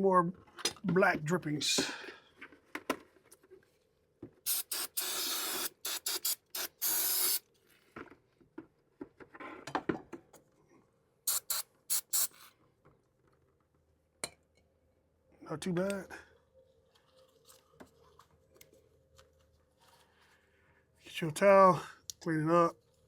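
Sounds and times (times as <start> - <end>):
aerosol spray hissing: 4.5 - 7.4, 11.3 - 12.5.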